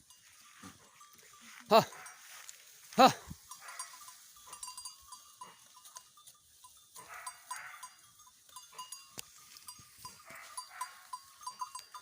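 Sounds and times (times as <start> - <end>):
light rustling in brush: 0.1 - 4.6
small clinks: 3.4 - 12.0.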